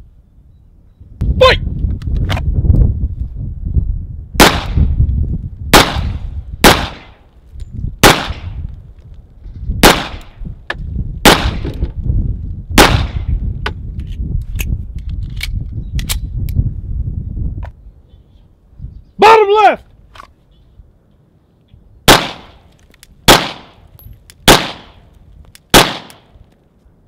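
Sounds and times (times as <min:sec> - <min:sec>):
pistol shots: 0:04.4 - 0:04.8, 0:05.7 - 0:07.2, 0:08.0 - 0:08.6, 0:09.8 - 0:10.3, 0:11.2 - 0:11.7, 0:12.8 - 0:13.3, 0:22.1 - 0:22.6, 0:23.2 - 0:23.8, 0:24.4 - 0:25.0, 0:25.7 - 0:26.3.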